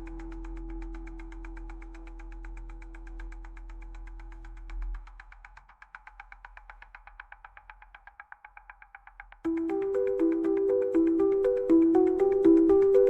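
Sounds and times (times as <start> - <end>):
fast even ticking: 9.4 - 13.0
held musical tone: 9.5 - 13.0.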